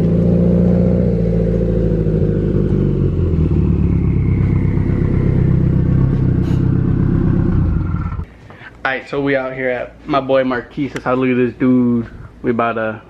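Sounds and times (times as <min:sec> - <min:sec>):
car engine low rumble: 0:00.0 - 0:08.3.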